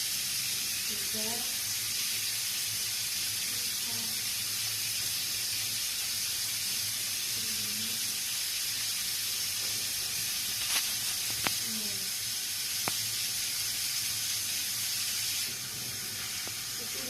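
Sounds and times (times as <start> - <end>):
tap water running into sink: 0.0 - 17.0.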